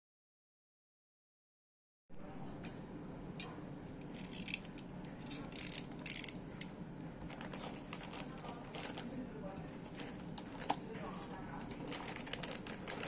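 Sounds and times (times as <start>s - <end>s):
packaging being handled: 7.2s - 9.2s, 9.9s - 13.0s
packaging rustling: 7.3s - 9.2s, 9.9s - 13.0s.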